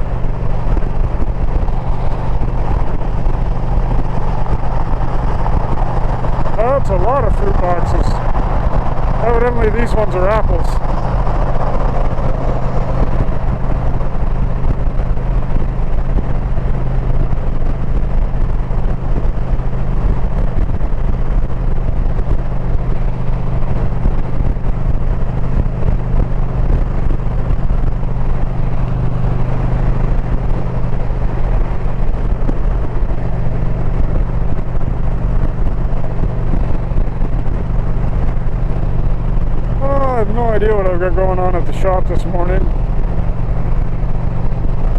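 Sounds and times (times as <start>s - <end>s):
motorcycle engine running: 0.0s - 44.9s
wind rush over microphone: 0.0s - 44.9s.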